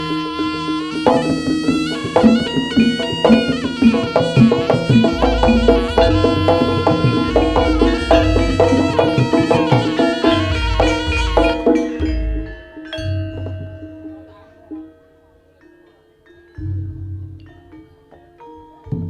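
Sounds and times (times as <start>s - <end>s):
shrill reed wind instrument: 0.0s - 13.6s
drum strokes: 0.0s - 14.9s
deep gong notes: 4.8s - 14.8s.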